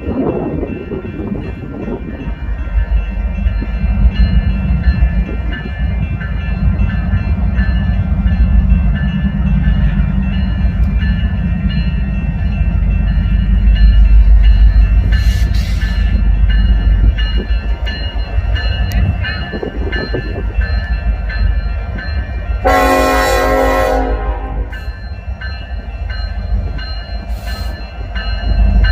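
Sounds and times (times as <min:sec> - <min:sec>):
freight train rumbling past: 0:00.0 - 0:28.9
locomotive air horn: 0:22.6 - 0:24.7.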